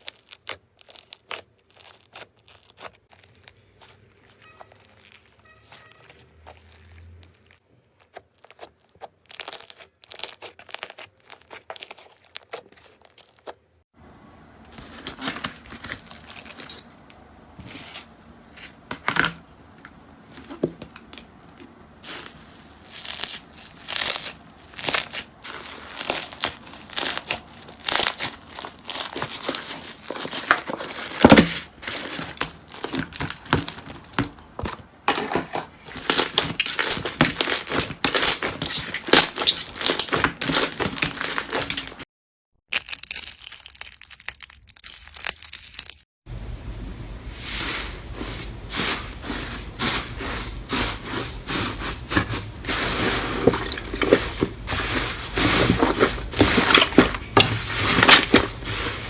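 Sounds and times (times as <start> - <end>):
slime squished by hands: 0.0 - 13.7, 20.4 - 34.6.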